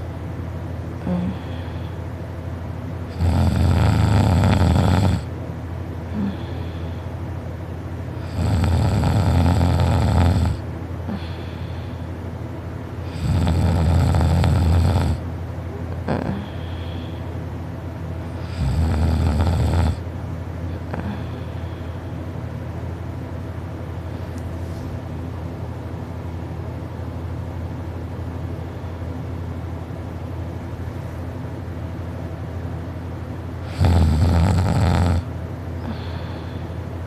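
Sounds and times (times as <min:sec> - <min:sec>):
steady low hum: 0:00.0 - 0:37.0
person snoring loudly: 0:03.1 - 0:05.3, 0:08.2 - 0:10.6, 0:13.0 - 0:15.2, 0:16.0 - 0:16.6, 0:18.3 - 0:20.0, 0:33.6 - 0:36.2.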